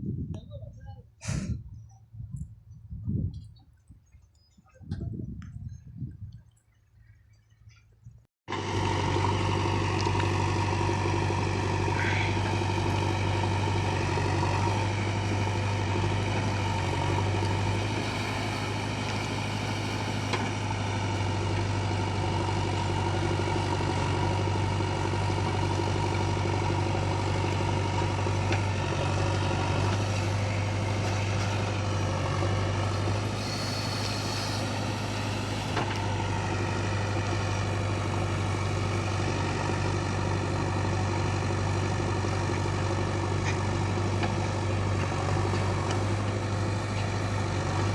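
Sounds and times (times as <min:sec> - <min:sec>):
heavy diesel engine running: 0:08.5 - 0:47.9.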